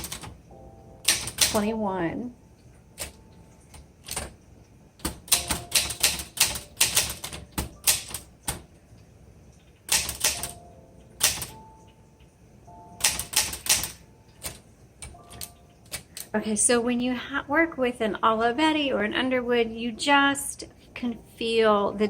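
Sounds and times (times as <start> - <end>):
manual typewriter typing: 0.0 - 0.4, 1.0 - 1.7, 3.0 - 4.4, 5.0 - 8.7, 9.7 - 11.6, 13.0 - 16.3.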